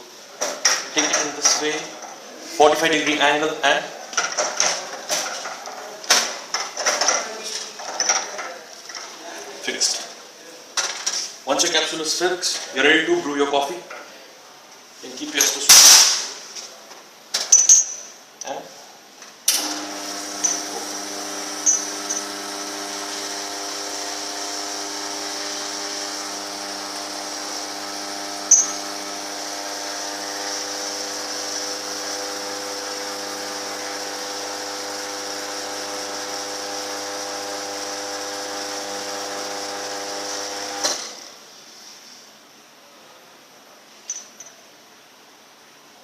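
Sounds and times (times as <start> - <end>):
espresso machine pump humming: 19.6 - 41.3.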